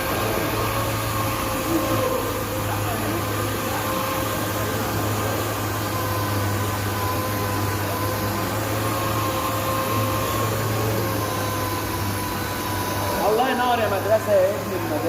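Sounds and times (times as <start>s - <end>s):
power sander whirring: 0.0s - 15.0s.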